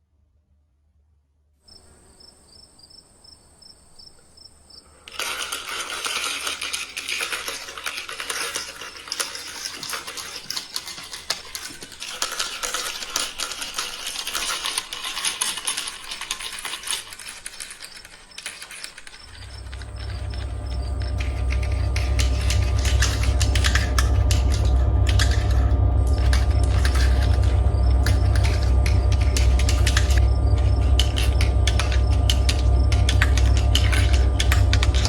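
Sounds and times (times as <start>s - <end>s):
crickets chirping: 1.7s - 35.0s
marbles clattering down plastic rails: 5.0s - 35.0s
steady high ringing tone: 19.2s - 35.0s.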